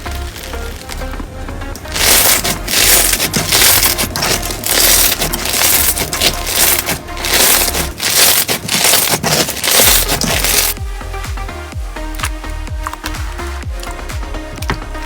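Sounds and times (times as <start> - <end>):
crunchy slime crackling and popping: 1.8 - 10.8.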